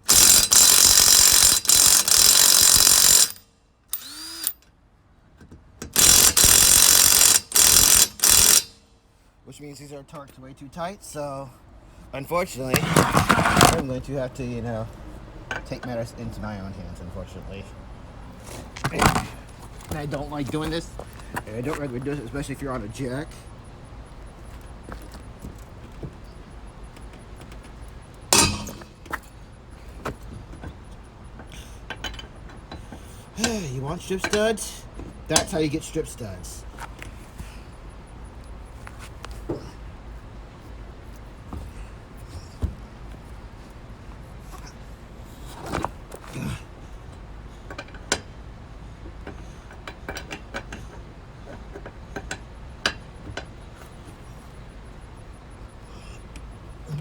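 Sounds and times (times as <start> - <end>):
metal tool clicking on lug nuts: 0.0 - 4.7, 5.8 - 8.8, 28.3 - 29.2, 31.9 - 35.6, 49.2 - 53.6
loud metallic clank: 28.3 - 29.1.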